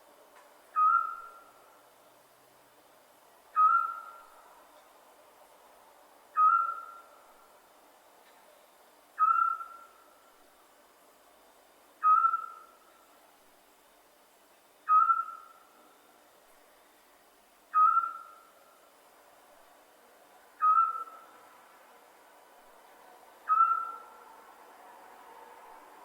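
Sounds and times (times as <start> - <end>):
owl calling whistled note: 0.8 - 1.5, 3.6 - 4.3, 6.4 - 7.1, 9.2 - 10.0, 12.0 - 12.8, 14.8 - 15.6, 17.7 - 18.5, 20.6 - 21.2, 23.5 - 24.2.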